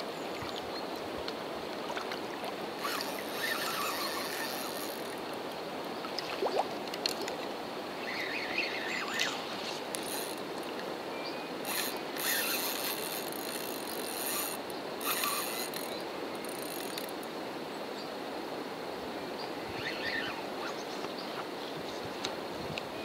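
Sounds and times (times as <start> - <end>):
steady background hiss: 0.0 - 23.0
fishing reel whirring: 2.8 - 5.3, 8.1 - 10.5, 11.6 - 17.2.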